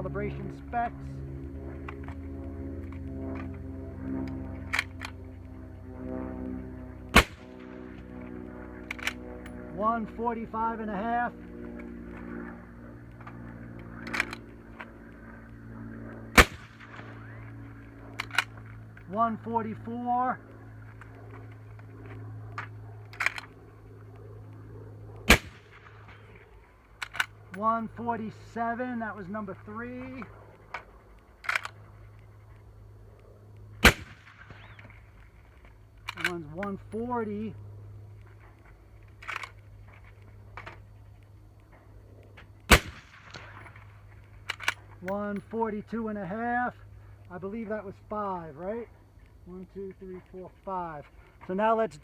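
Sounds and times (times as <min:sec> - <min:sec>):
suppressed rifle shot: 0:07.1 - 0:08.1, 0:16.3 - 0:17.5, 0:25.2 - 0:26.4, 0:33.8 - 0:35.0, 0:42.7 - 0:43.8.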